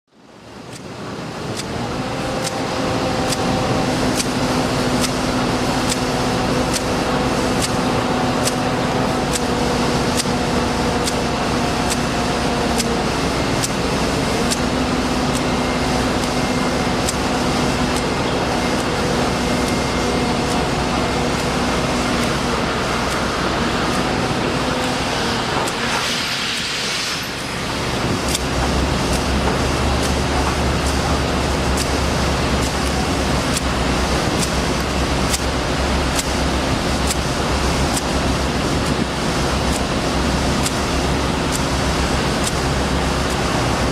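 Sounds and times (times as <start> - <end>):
machine humming: 0.2 - 43.9
sharp ticks: 2.4 - 2.6, 4.1 - 4.4, 5.0 - 5.2, 5.8 - 7.0, 7.6 - 7.8, 8.4 - 8.7, 9.3 - 9.5, 10.1 - 10.4, 11.0 - 12.1, 13.6 - 13.8, 14.5 - 14.7, 17.0 - 18.2, 28.2 - 29.3, 32.6 - 35.5, 36.1 - 36.4, 37.0 - 37.3, 40.6 - 40.8, 42.4 - 42.6.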